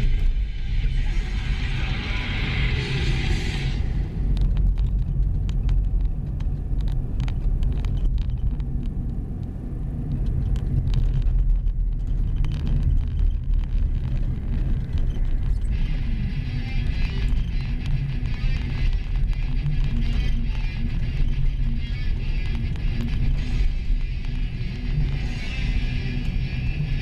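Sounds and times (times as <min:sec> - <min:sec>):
music: 0:00.0 - 0:04.4, 0:14.8 - 0:27.0
car engine and tyres rumbling: 0:00.0 - 0:27.0.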